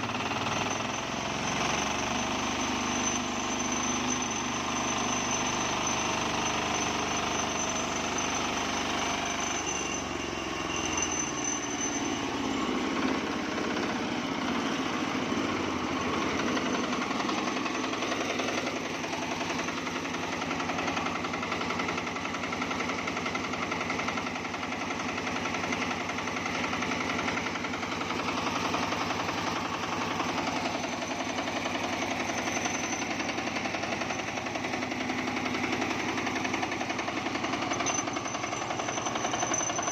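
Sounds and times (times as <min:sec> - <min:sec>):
diesel engine knocking: 0:00.0 - 0:39.9.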